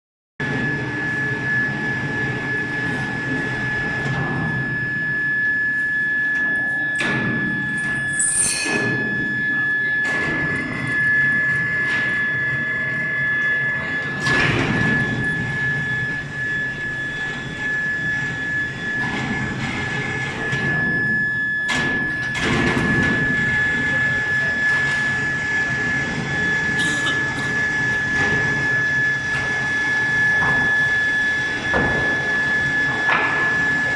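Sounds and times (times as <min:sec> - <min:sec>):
furnace high-pitched whine: 0:00.4 - 0:33.9
clanks and thuds of metal work: 0:08.4 - 0:09.3.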